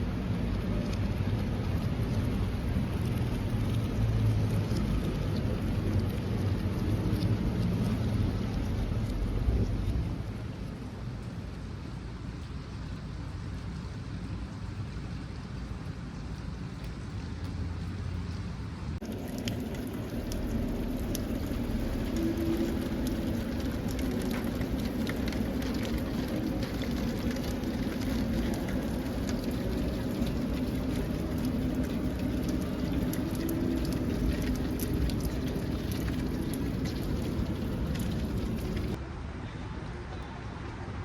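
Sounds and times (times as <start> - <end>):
steady rain: 0.0 - 39.0
low hum: 19.0 - 39.0.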